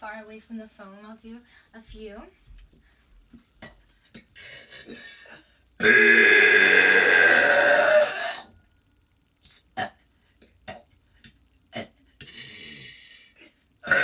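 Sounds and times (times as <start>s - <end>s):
woman's long loud burp: 4.8s - 8.6s.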